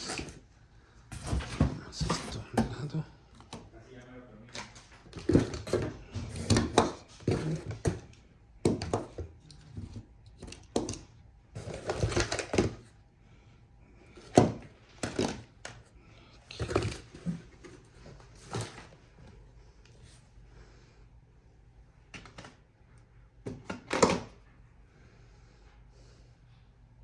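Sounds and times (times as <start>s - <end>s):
hard objects knocking and clattering: 4.6s - 12.9s, 14.2s - 15.8s.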